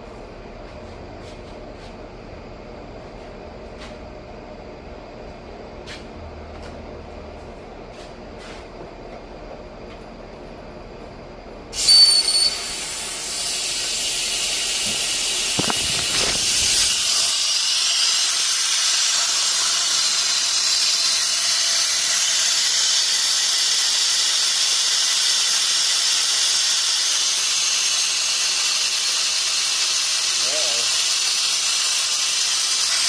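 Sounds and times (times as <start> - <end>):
compressed air hissing: 11.8 - 33.0.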